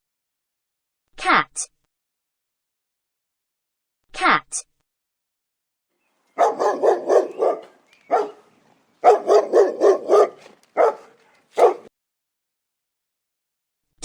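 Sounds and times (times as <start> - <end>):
dog barking: 6.4 - 11.9.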